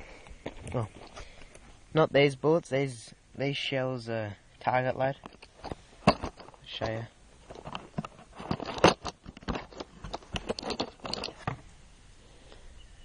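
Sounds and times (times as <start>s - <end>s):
shotgun shells clicking and rattling: 5.1s - 11.5s.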